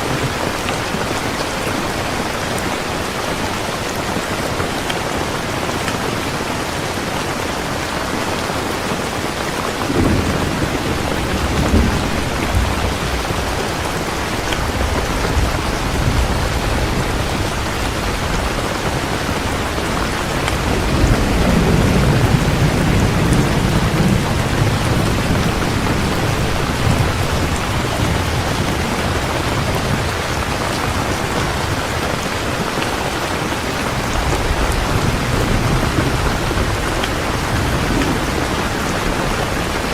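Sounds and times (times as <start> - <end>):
heavy rain: 0.0 - 39.9
rolling thunder: 9.8 - 39.9.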